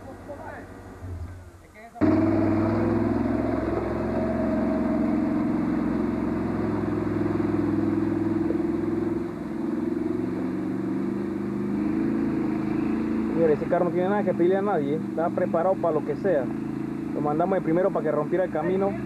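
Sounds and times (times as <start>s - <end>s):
engine running under load: 0.0s - 19.0s.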